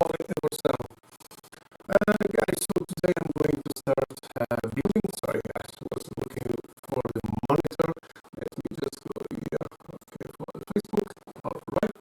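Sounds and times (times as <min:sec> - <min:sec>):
crackling and scratchy clicking: 0:00.0 - 0:12.0.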